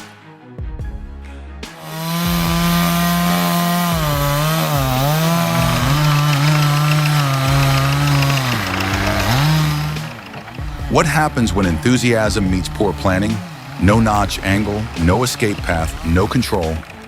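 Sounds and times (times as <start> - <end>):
chainsaw cutting wood: 1.6 - 17.0.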